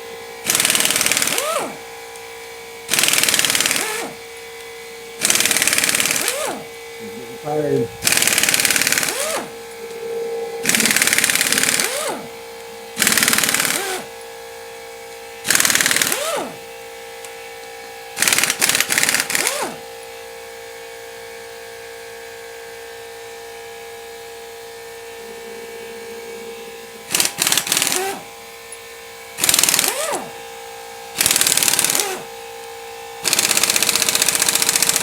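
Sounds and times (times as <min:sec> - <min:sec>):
air compressor humming: 0:00.0 - 0:20.1, 0:24.9 - 0:35.0
tool winding down whine: 0:00.0 - 0:35.0
pneumatic impact wrench rattling: 0:00.4 - 0:01.8, 0:02.9 - 0:04.2, 0:05.2 - 0:06.8, 0:08.0 - 0:09.6, 0:10.6 - 0:12.4, 0:13.0 - 0:14.2, 0:15.4 - 0:16.6, 0:18.2 - 0:19.8, 0:27.1 - 0:28.3, 0:29.4 - 0:30.4, 0:31.2 - 0:32.4, 0:33.2 - 0:35.0.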